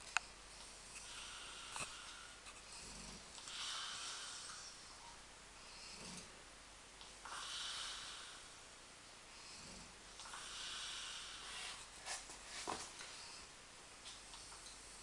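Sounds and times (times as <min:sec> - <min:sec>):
pet snoring: 0:00.8 - 0:05.1, 0:05.7 - 0:06.3, 0:07.2 - 0:08.5, 0:09.4 - 0:11.8.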